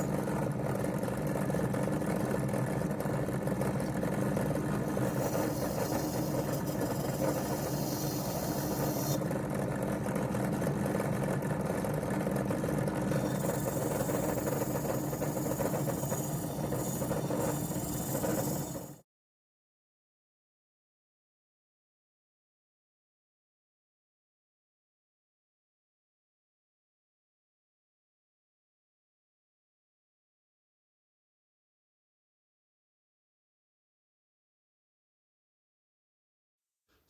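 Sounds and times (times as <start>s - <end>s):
small electric motor tool: 4.5s - 9.3s, 13.1s - 19.0s
brush scouring metal: 5.1s - 9.2s.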